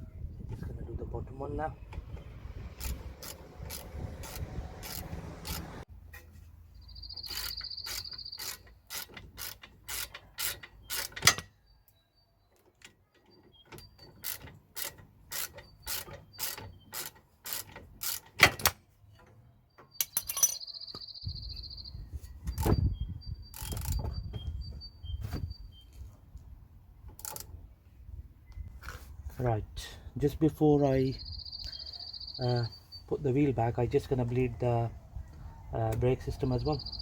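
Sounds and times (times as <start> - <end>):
socket ratchet clicking: 2.7 - 5.8.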